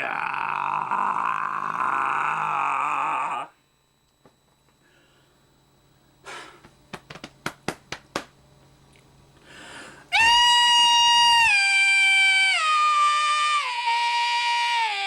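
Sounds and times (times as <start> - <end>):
person breathing: 4.8 - 5.5, 6.2 - 6.7, 9.4 - 10.1.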